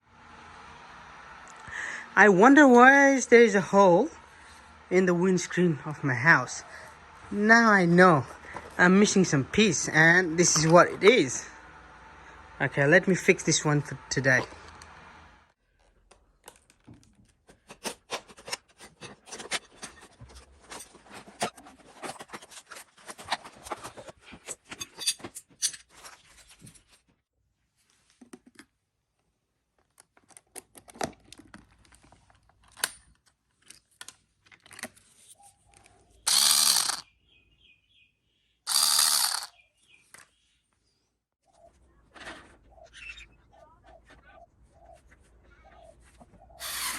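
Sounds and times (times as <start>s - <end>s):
power tool bursts: 36.3s - 37.1s, 38.7s - 39.5s, 46.6s - 46.9s.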